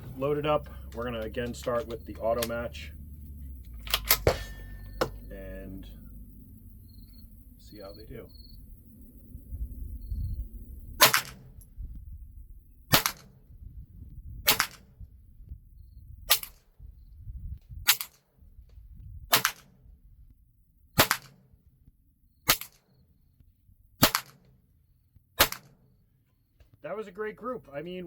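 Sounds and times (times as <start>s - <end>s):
rifle gunshots: 3.8s - 5.6s, 11.0s - 11.6s, 12.9s - 13.4s, 14.5s - 14.9s, 21.0s - 21.4s, 24.0s - 24.4s, 25.4s - 25.8s.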